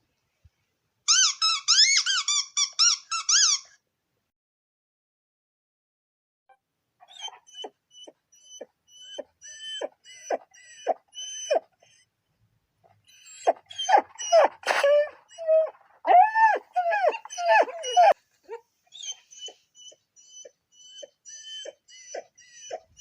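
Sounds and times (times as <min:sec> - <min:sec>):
dog whining: 0:07.0 - 0:12.1, 0:12.9 - 0:23.0.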